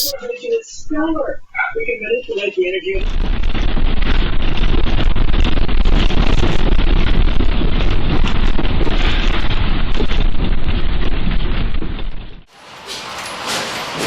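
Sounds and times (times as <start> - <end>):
earthquake rumbling: 3.0 - 12.5.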